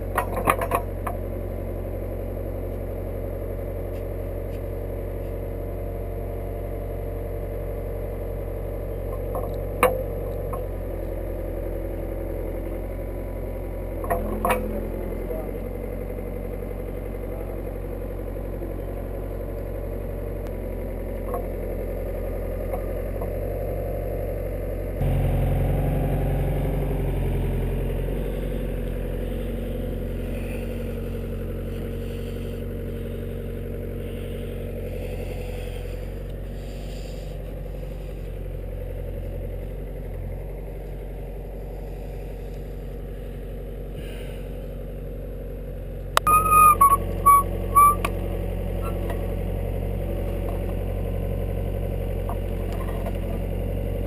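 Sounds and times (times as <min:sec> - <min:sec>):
excavator diesel engine running: 0:00.0 - 0:54.0
light clatter: 0:00.1 - 0:01.2, 0:09.1 - 0:10.7, 0:52.2 - 0:53.5.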